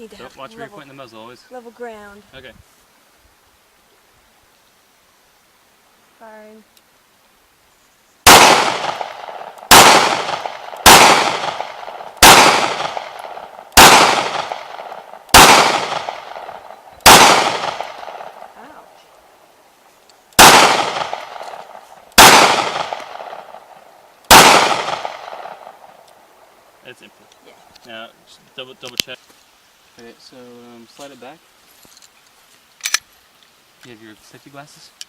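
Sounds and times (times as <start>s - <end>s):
pistol shots: 8.2s - 18.4s, 20.4s - 23.7s, 24.3s - 25.9s.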